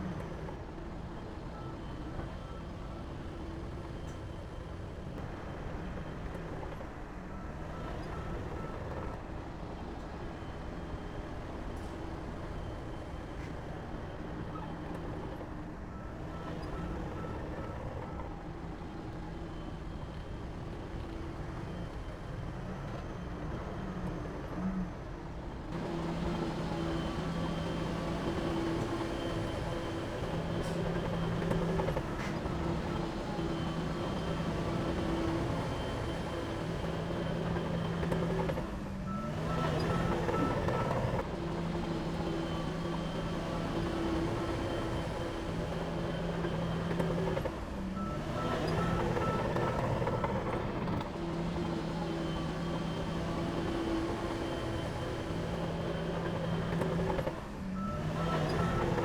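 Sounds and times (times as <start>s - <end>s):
heavy diesel machinery running: 25.5s - 59.0s
reversing alarm beeping: 25.7s - 59.0s.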